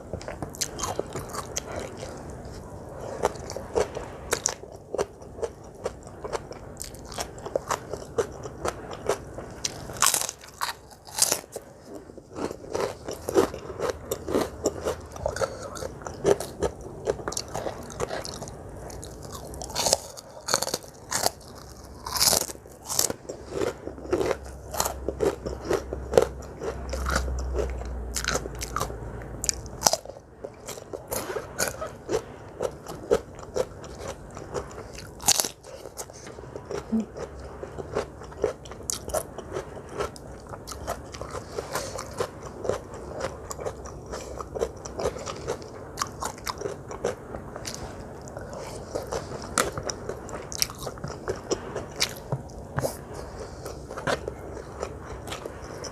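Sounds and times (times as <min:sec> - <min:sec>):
crunchy food chewing: 0:00.0 - 0:55.9.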